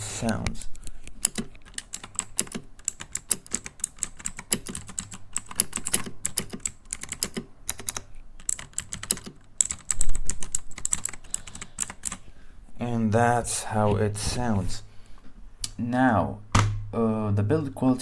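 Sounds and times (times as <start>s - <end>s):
mechanical keyboard typing: 0.1s - 12.2s
heavy deep thump: 16.5s - 17.0s.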